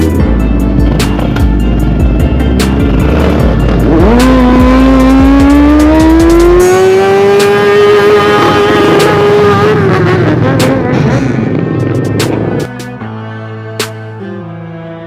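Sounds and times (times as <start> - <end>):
motorcycle engine at high revs: 0.9 - 12.6.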